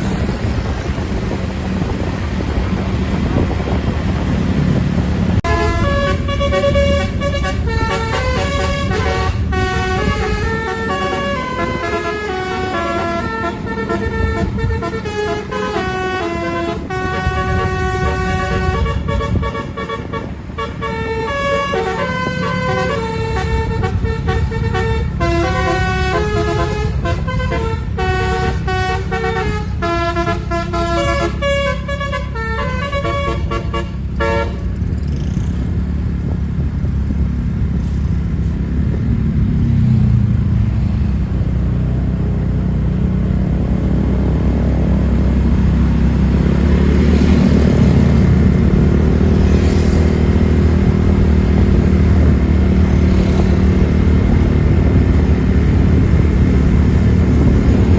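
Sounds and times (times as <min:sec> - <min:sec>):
bus engine rumble: 0:00.0 - 0:57.9
bus multi-tone horn tune: 0:05.4 - 0:34.9.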